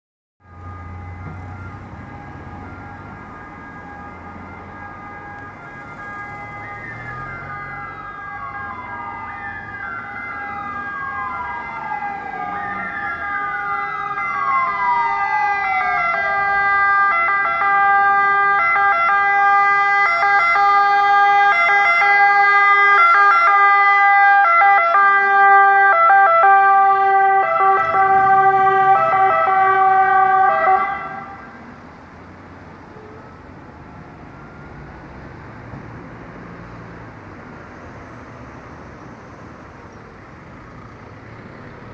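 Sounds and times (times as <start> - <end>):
ambulance wail siren: 0.4 - 41.9.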